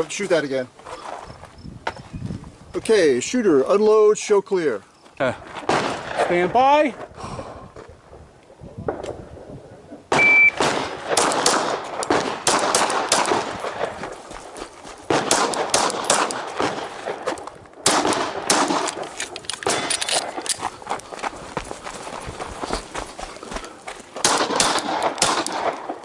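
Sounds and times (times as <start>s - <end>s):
gunshots: 5.6s - 6.5s, 10.1s - 14.1s, 15.1s - 20.4s, 24.2s - 26.0s
shot timer beep: 10.2s - 10.6s.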